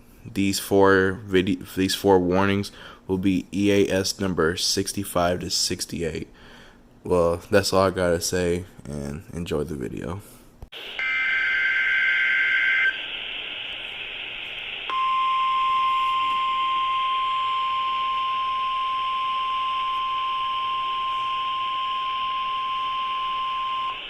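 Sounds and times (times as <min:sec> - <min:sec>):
radio receiver hiss: 0:10.8 - 0:15.1, 0:21.0 - 0:24.0
steady alarm tone: 0:10.8 - 0:24.0.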